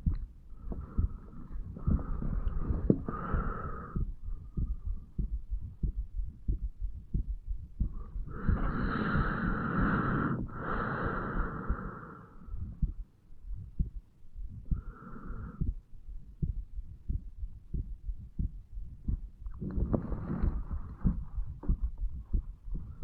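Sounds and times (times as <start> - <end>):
heartbeat thuds: 0.0 - 23.0
breathing through chest: 0.5 - 5.0, 7.8 - 12.9, 14.6 - 15.8.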